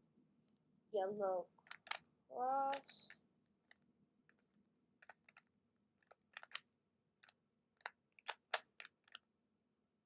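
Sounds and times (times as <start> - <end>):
puzzle cube plastic clicks: 1.5 - 9.3.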